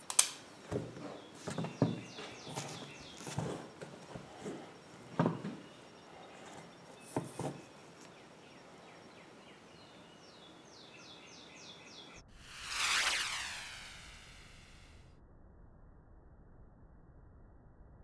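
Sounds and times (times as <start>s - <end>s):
bird chirping: 0.7s - 3.4s, 5.4s - 12.2s.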